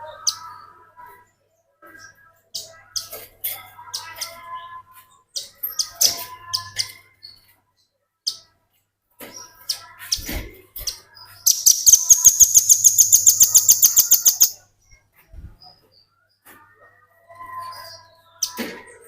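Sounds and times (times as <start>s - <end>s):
bird chirping rapidly: 11.5s - 14.6s.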